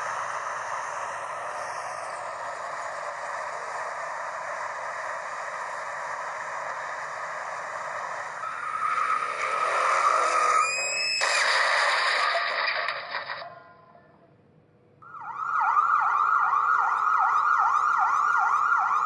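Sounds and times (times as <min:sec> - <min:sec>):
car road noise: 0:00.0 - 0:13.6
car crash scraping: 0:05.6 - 0:13.5
tyres squealing: 0:08.4 - 0:13.5.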